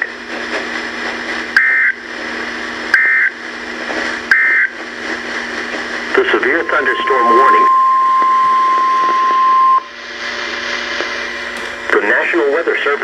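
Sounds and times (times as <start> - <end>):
radio static: 3.0 - 11.3
warbling digital data bursts: 6.2 - 8.1.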